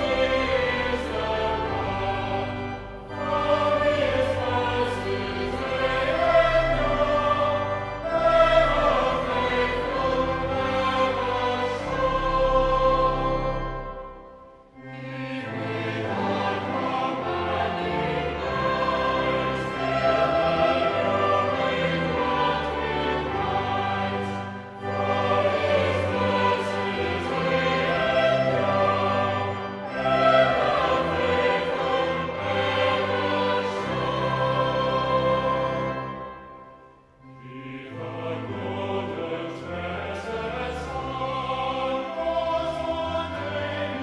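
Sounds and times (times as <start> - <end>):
choir singing a hymn: 0.0 - 44.0
instrumental accompaniment: 0.0 - 44.0.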